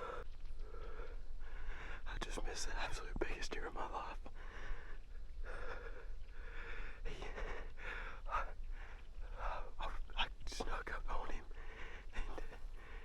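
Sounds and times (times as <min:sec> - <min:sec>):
man breathing hard: 0:04.4 - 0:09.1.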